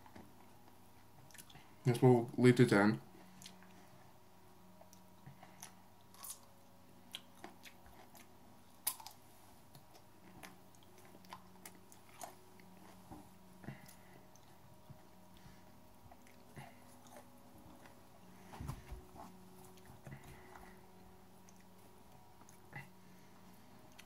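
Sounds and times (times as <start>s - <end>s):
person chewing crunchy food: 1.1s - 1.7s, 4.7s - 23.0s.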